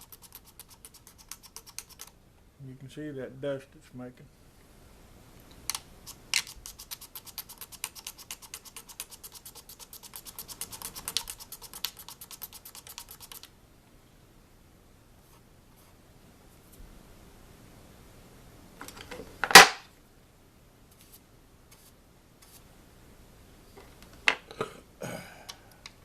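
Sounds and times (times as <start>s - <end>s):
razor blade scraping fretboard: 6.1s - 13.4s.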